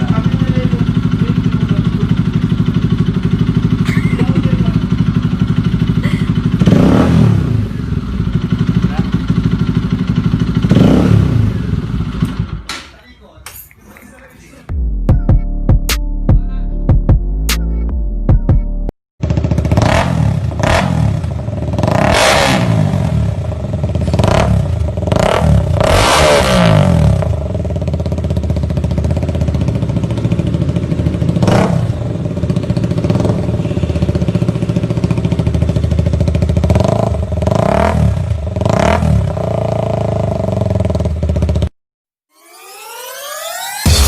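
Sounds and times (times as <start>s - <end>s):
motorcycle engine revving: 0.0s - 12.7s, 19.2s - 41.7s.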